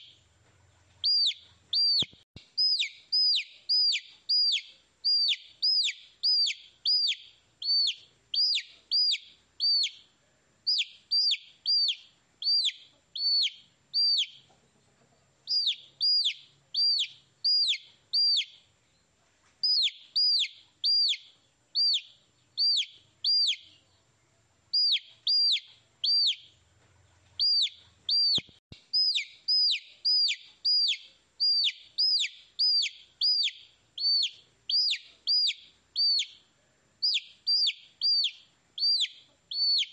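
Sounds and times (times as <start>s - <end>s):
baby chicks peeping: 0.0s - 39.9s.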